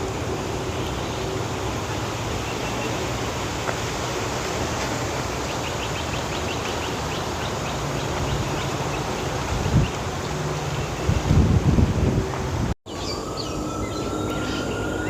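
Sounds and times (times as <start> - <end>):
low outdoor rumble: 0.0 - 5.9
bird calling in short high notes: 12.9 - 15.0.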